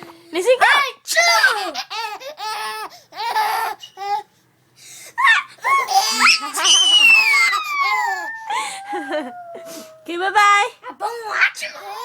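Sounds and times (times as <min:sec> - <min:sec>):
baby laughing and squealing: 0:05.2 - 0:10.1.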